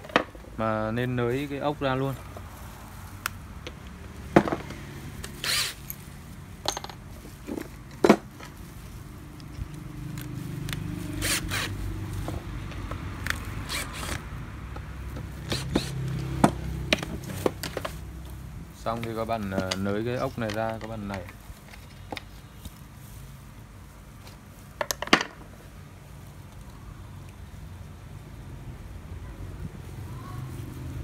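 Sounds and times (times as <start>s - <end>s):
screwdriver clicking and scraping: 5.2s - 6.0s, 9.4s - 11.7s, 13.2s - 14.3s, 15.4s - 16.3s.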